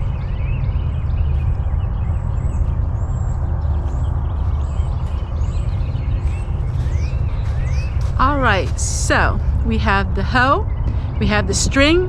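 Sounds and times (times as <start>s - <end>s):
small birds chirping: 0.0s - 12.0s
wind buffeting microphone: 0.0s - 12.0s.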